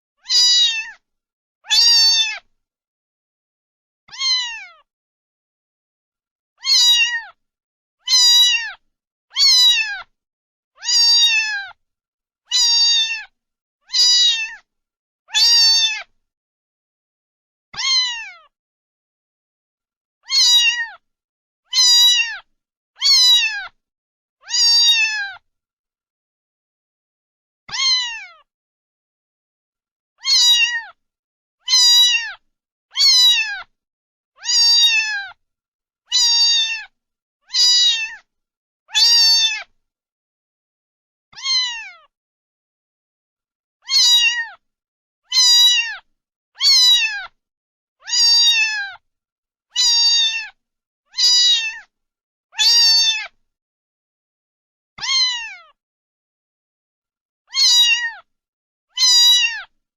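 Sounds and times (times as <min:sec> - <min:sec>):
cat meowing: 0:00.2 - 0:01.0, 0:01.6 - 0:02.5, 0:04.1 - 0:04.9, 0:06.6 - 0:07.4, 0:08.0 - 0:10.1, 0:10.8 - 0:11.8, 0:12.5 - 0:13.3, 0:13.9 - 0:14.7, 0:15.3 - 0:16.1, 0:17.8 - 0:18.5, 0:20.2 - 0:21.0, 0:21.7 - 0:23.8, 0:24.4 - 0:25.4, 0:27.7 - 0:28.5, 0:30.2 - 0:31.0, 0:31.6 - 0:33.7, 0:34.4 - 0:35.4, 0:36.1 - 0:36.9, 0:37.5 - 0:38.3, 0:38.9 - 0:39.7, 0:41.3 - 0:42.1, 0:43.8 - 0:44.6, 0:45.3 - 0:47.4, 0:48.0 - 0:49.0, 0:49.7 - 0:51.9, 0:52.6 - 0:53.4, 0:55.0 - 0:55.8, 0:57.5 - 0:58.3, 0:58.9 - 0:59.8.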